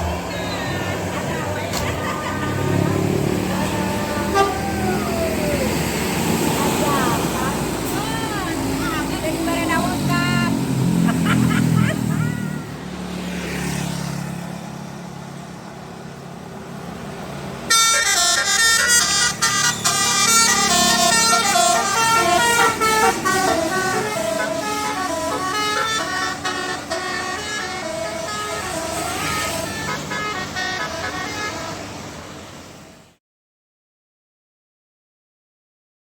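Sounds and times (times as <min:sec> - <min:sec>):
bus engine running low: 0:00.0 - 0:12.8, 0:14.4 - 0:33.2
multi-tone bus horn melody: 0:00.1 - 0:05.4, 0:06.3 - 0:12.9, 0:17.7 - 0:32.3.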